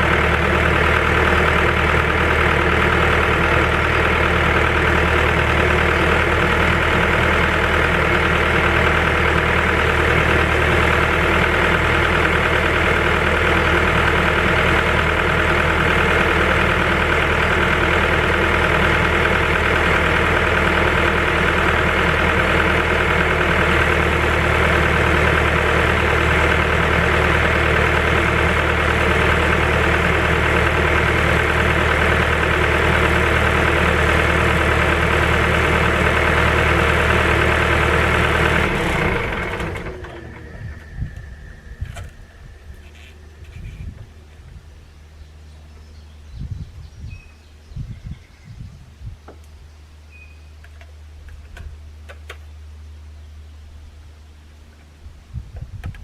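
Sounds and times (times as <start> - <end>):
diesel engine idling: 0.0 - 48.4.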